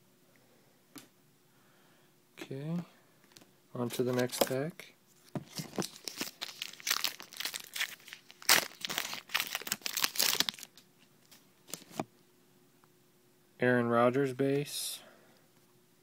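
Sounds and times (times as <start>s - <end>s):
card pack wrapper crinkling: 5.4s - 12.0s.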